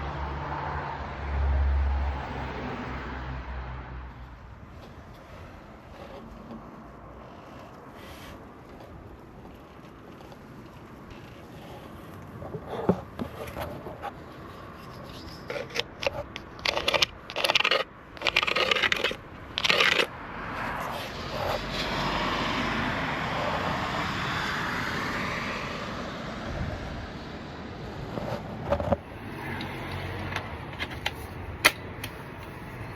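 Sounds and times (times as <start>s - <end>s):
tool scraping gritty render: 4.6s - 22.2s, 28.1s - 32.9s.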